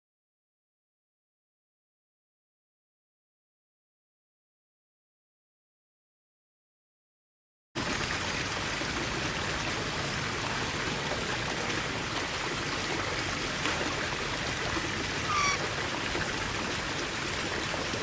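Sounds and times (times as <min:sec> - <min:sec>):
rushing water noise: 0:07.8 - 0:18.0
parrot chirp: 0:15.2 - 0:15.7.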